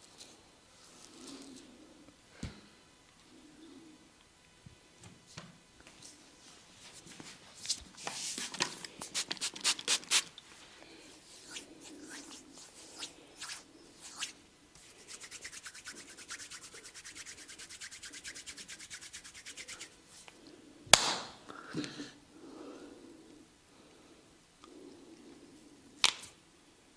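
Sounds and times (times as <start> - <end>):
hands rubbing over skin: 6.8 - 10.3, 11.2 - 20.3.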